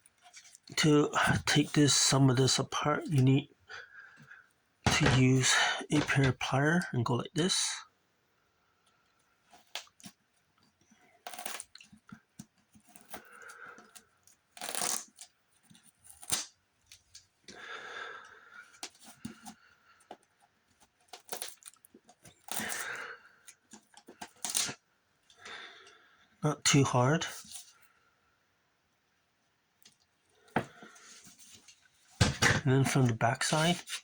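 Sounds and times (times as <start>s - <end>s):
clicks and crackles: 21.0s - 25.4s.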